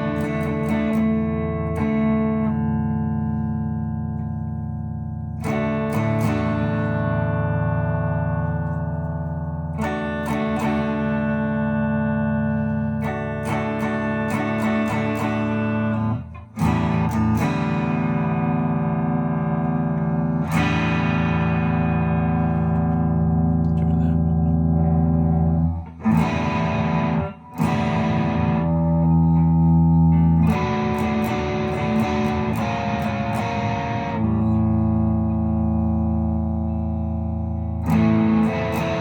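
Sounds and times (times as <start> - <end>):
overdriven electric guitar chords: 0.0 - 39.0.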